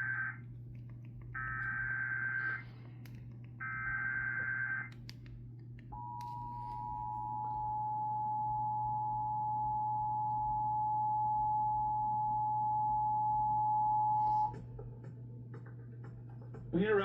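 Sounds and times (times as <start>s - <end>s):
low hum: 0.0s - 16.7s
two-tone alarm: 1.4s - 2.6s, 3.6s - 4.9s, 6.0s - 14.6s.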